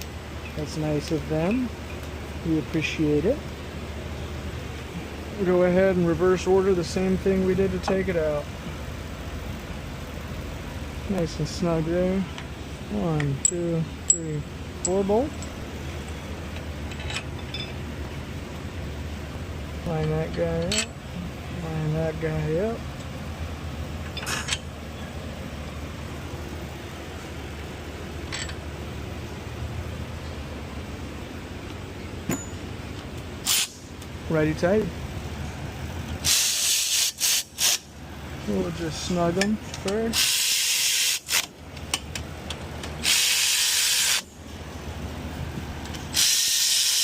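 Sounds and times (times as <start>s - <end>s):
low hum of shop noise: 0.0s - 47.0s
pneumatic tool with air hiss: 33.4s - 33.9s, 36.2s - 37.9s, 40.1s - 41.5s, 43.0s - 44.4s, 46.0s - 47.0s.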